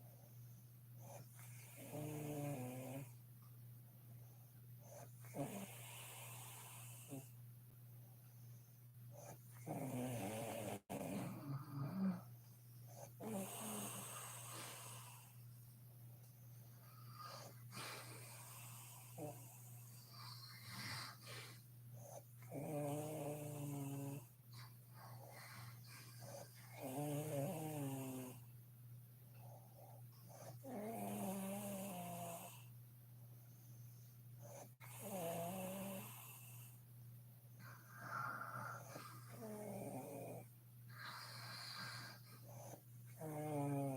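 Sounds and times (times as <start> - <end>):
woman snoring: 1.7 - 3.1, 5.3 - 7.3, 9.6 - 12.3, 13.0 - 15.3, 22.5 - 24.3, 26.3 - 28.4, 30.4 - 32.7, 34.5 - 36.5, 37.6 - 43.9
soft breathing: 10.6 - 22.5, 24.2 - 26.9, 37.5 - 43.2.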